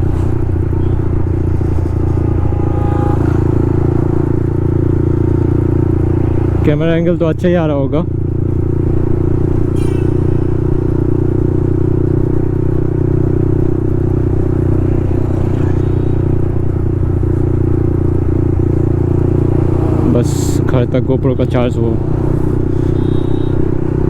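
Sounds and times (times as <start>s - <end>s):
loud motorcycle exhaust: 0.0s - 24.0s.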